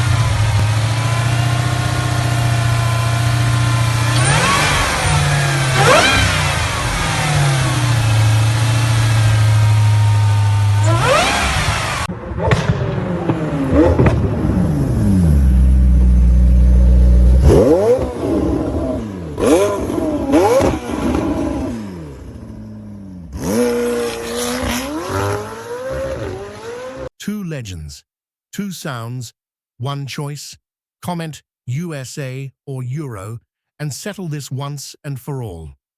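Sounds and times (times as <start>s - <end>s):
car engines revving: 0.0s - 27.1s.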